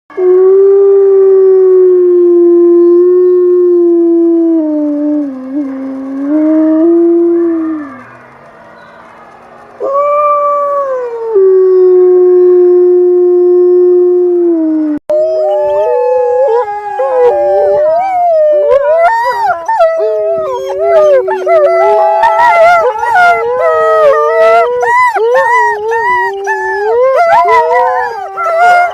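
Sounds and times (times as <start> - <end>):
wolf howling: 0.2 - 8.2, 9.8 - 28.9
wolves howling in chorus: 15.1 - 28.9
wolves yipping: 15.4 - 28.9.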